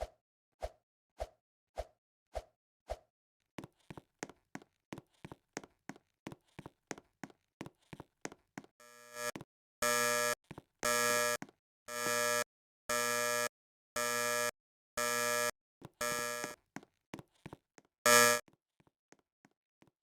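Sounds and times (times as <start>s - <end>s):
alarm buzzer buzzing: 8.8s - 16.6s, 18.1s - 18.4s.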